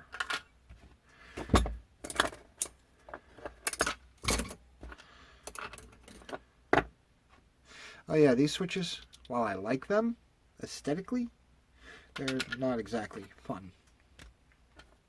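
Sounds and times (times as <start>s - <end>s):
metal parts clinking: 1.6s - 2.8s, 3.6s - 4.6s, 12.2s - 13.4s.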